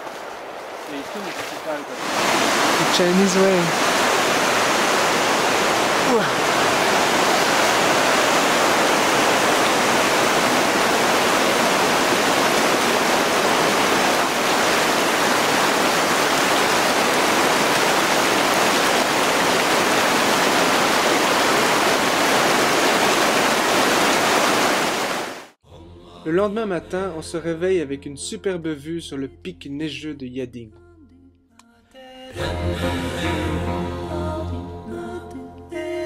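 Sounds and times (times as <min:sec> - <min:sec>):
rushing stream water: 0:00.0 - 0:25.6.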